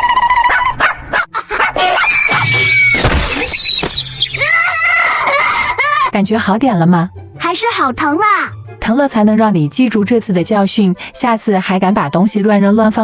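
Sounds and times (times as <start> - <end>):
cartoon character screaming: 1.8 - 3.0, 4.3 - 6.1
crash: 2.3 - 4.0
background music: 3.8 - 13.0
wailing cries: 4.4 - 6.1.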